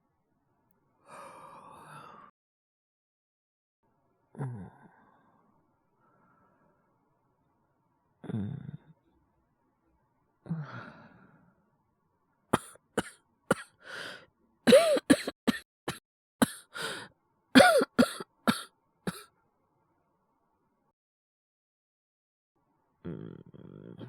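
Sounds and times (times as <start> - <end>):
breath: 1.0 - 2.3, 6.0 - 7.0, 13.8 - 14.3, 16.5 - 17.2
man coughing harshly: 12.6 - 13.7, 14.7 - 17.0, 17.6 - 19.2.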